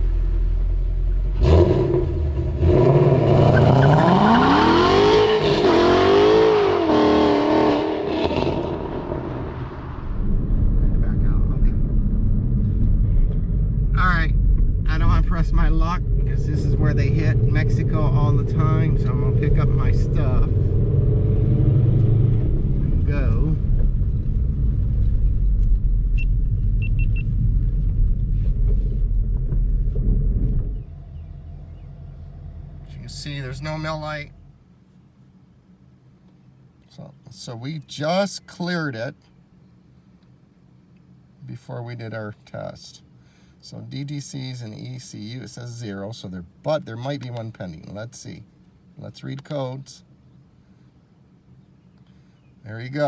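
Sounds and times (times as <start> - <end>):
car engine accelerating hard: 0.0 - 34.6.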